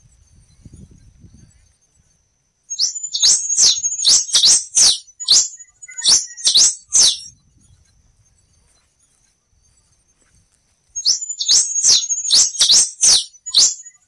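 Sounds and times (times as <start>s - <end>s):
finch singing whistled notes: 2.7s - 10.0s, 10.9s - 14.0s.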